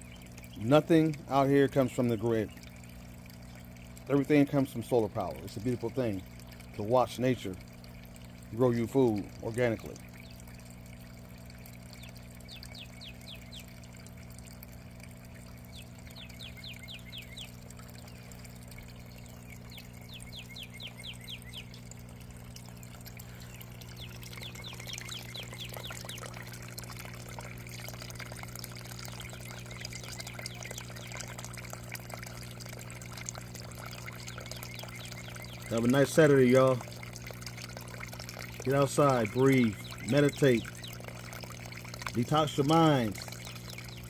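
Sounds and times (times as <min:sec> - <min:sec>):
steady low hum: 0:00.0 - 0:44.0
water trickling and pouring: 0:00.0 - 0:44.0
songbird trilling: 0:11.6 - 0:13.8, 0:15.4 - 0:22.0, 0:22.6 - 0:28.0, 0:28.9 - 0:31.3, 0:33.9 - 0:37.1, 0:38.6 - 0:44.0.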